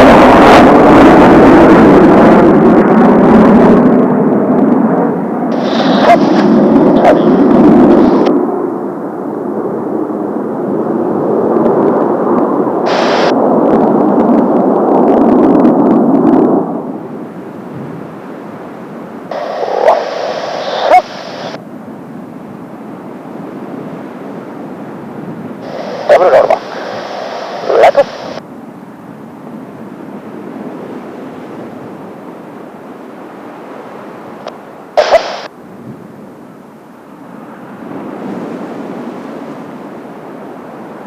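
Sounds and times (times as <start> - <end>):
jet aircraft flying past: 0.0 - 21.6, 25.6 - 28.4.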